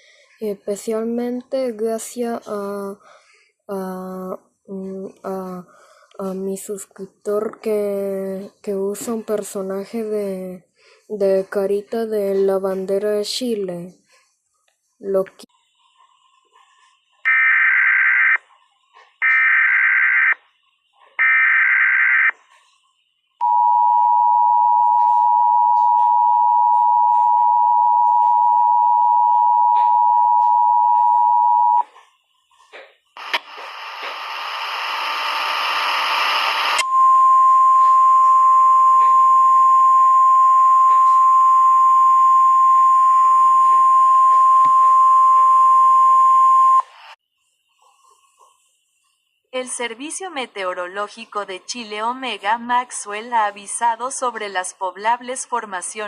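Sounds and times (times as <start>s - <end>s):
static-like noise: 31.8s - 36.8s.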